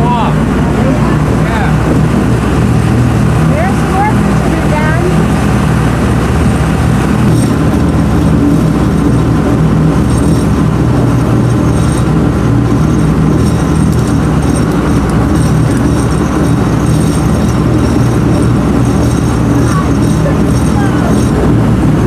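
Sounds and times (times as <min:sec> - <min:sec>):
boat engine droning: 0:00.0 - 0:22.0.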